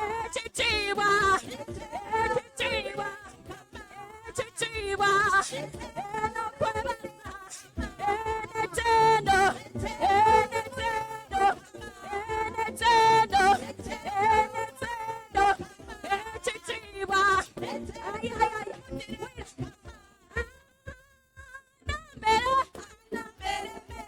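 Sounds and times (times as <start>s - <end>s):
gospel singing: 0.0s - 24.0s.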